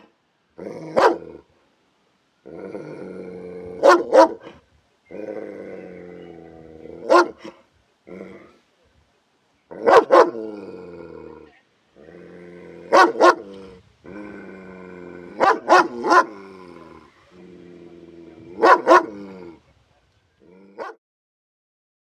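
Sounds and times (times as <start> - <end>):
dog growling: 0.6 - 1.5, 2.4 - 4.5, 5.1 - 8.6, 9.7 - 19.7, 20.4 - 21.0
dog barking: 1.0 - 1.3, 3.8 - 4.6, 7.0 - 7.6, 9.8 - 10.4, 12.9 - 13.5, 15.4 - 16.3, 18.6 - 19.2, 20.8 - 21.0.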